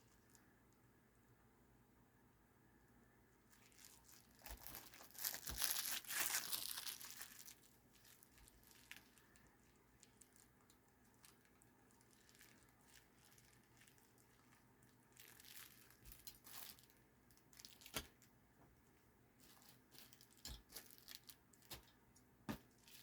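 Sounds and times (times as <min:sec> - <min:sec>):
plastic packaging crinkling: 0:03.5 - 0:18.3, 0:19.4 - 0:23.0.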